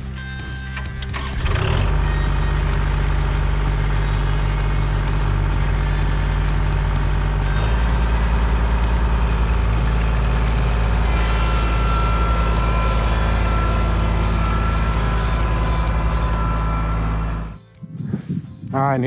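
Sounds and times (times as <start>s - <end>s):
tractor diesel engine running: 0.0s - 17.6s.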